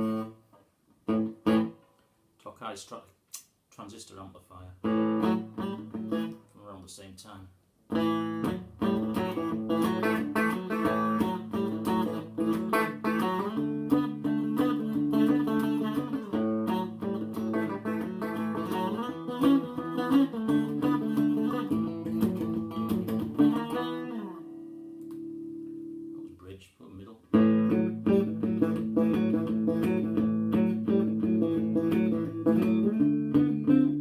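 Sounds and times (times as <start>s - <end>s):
clean electric guitar chords: 4.8s - 6.4s, 7.9s - 26.3s, 27.3s - 34.0s.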